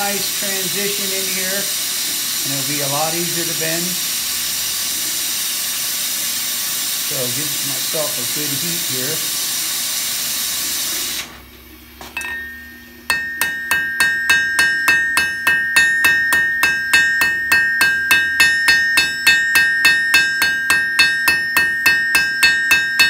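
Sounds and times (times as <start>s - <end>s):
hammer striking hot steel: 12.0s - 23.0s
anvil ringing: 12.2s - 23.0s.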